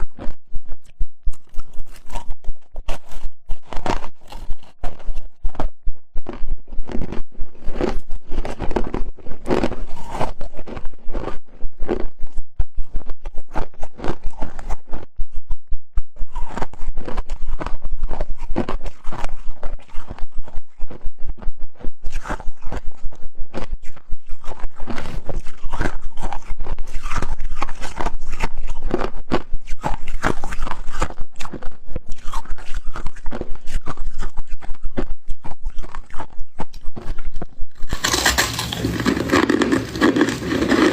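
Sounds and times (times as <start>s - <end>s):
crunching and chewing ice: 0.0s - 15.2s, 16.2s - 40.9s.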